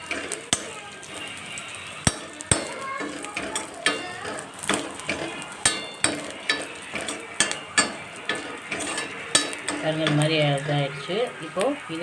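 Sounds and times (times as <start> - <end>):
light sizzle: 0.0 - 12.0
spatula scraping a pan: 0.0 - 12.0.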